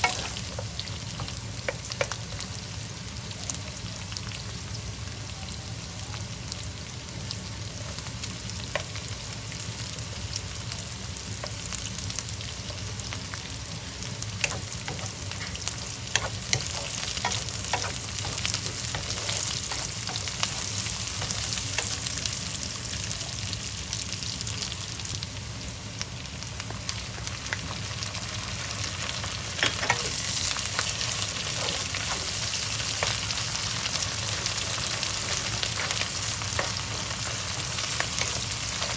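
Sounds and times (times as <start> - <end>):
food sizzling in oil: 0.0 - 38.9.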